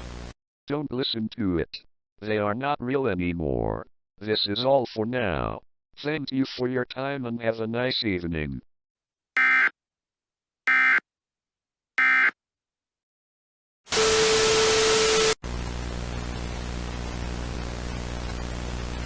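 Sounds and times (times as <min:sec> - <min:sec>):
alert data tones: 0:09.4 - 0:09.7, 0:10.7 - 0:11.0, 0:12.0 - 0:12.3.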